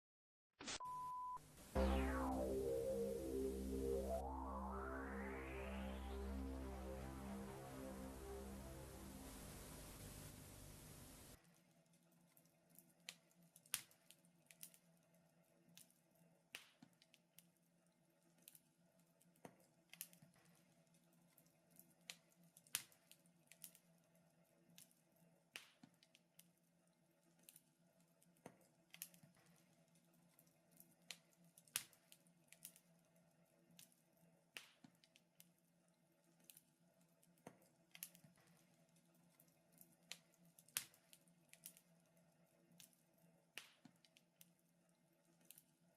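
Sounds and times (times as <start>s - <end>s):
faint steady hum: 0.9s - 11.4s
fire pops and snaps: 31.1s - 32.8s, 37.9s - 38.6s, 40.0s - 41.8s.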